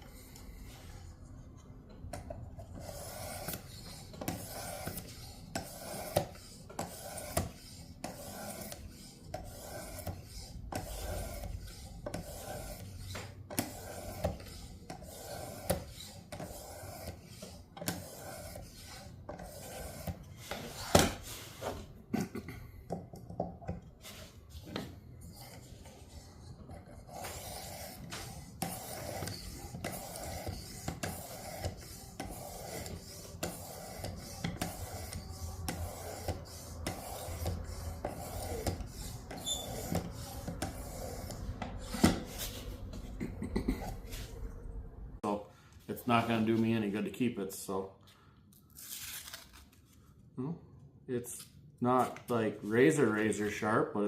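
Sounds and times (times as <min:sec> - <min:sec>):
knife rasping on sharpener: 0:02.7 - 0:20.8, 0:25.2 - 0:42.6.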